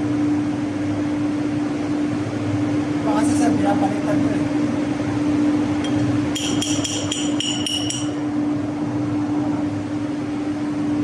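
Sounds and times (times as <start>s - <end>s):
steady machinery hum: 0.0s - 11.0s
ringing metal-on-metal taps: 5.8s - 8.2s.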